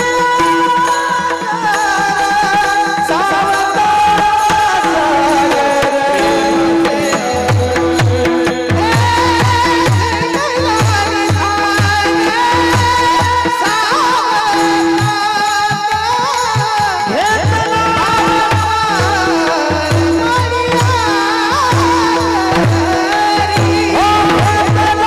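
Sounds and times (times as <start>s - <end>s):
high male voice singing: 0.0s - 25.0s
steady drum beat: 2.5s - 14.0s, 16.5s - 25.0s.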